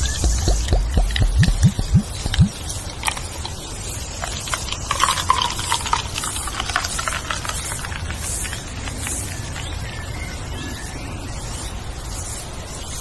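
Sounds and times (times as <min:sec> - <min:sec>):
bird chirps: 0:00.0 - 0:02.8
leaves rustling in wind: 0:00.0 - 0:13.0.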